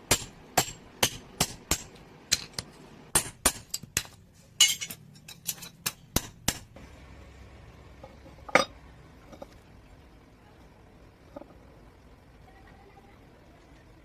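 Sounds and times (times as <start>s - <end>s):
hammer striking metal: 0.0s - 6.7s.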